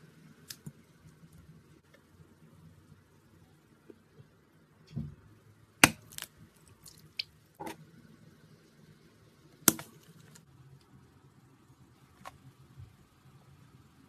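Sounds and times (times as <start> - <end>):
soft squishy sounds: 5.8 - 7.8, 9.6 - 11.0.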